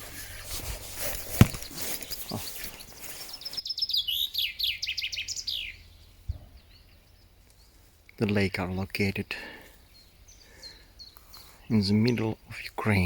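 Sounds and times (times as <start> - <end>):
songbird high chirps: 1.1 - 7.8, 9.8 - 13.0.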